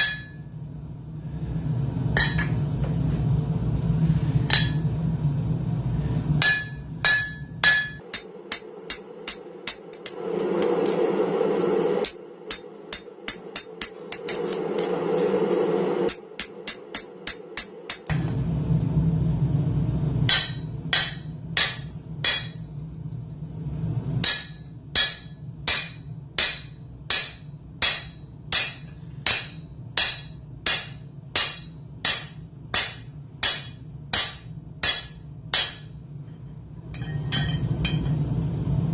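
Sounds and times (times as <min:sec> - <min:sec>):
hammer striking steel on anvil: 0:00.0 - 0:00.5, 0:02.2 - 0:02.6, 0:04.5 - 0:04.9, 0:06.4 - 0:18.4, 0:20.3 - 0:22.8, 0:24.2 - 0:36.0, 0:36.8 - 0:38.2
steady rushing noise: 0:08.0 - 0:19.0
low drone: 0:08.0 - 0:22.2.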